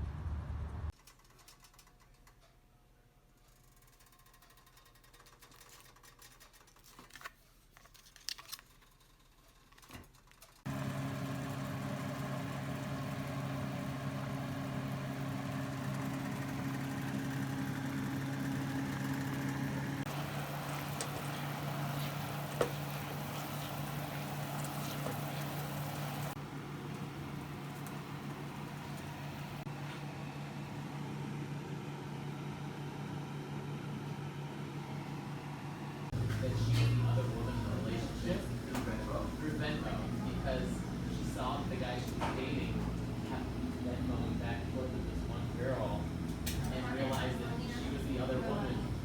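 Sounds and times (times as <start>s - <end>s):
low mechanical hum: 10.4s - 49.0s.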